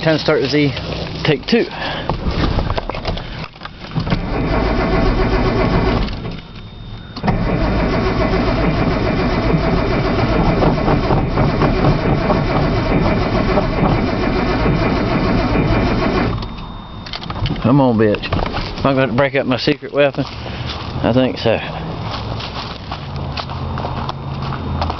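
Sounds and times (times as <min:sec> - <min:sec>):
car engine cranking on starter: 0:03.1 - 0:06.6, 0:07.2 - 0:16.6.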